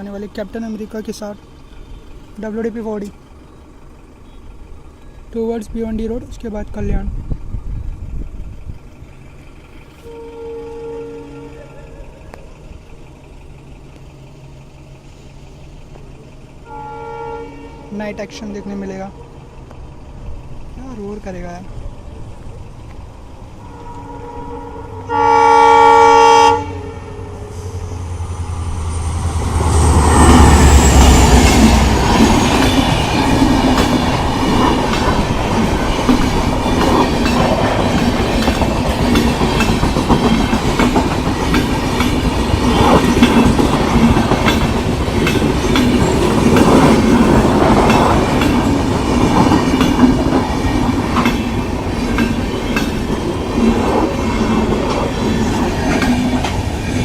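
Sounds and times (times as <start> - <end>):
diesel engine deep rumble: 0.0 - 57.0
locomotive horn blast: 10.0 - 12.3, 16.6 - 18.0, 23.6 - 28.2
wheels clacking over rail joints: 28.7 - 57.0.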